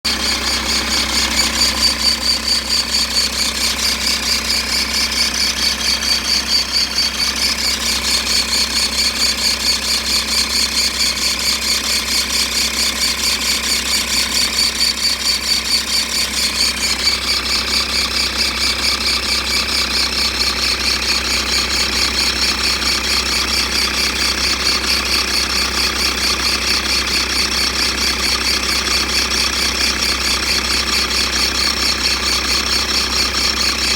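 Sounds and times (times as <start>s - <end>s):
diesel engine idling: 0.1s - 33.9s.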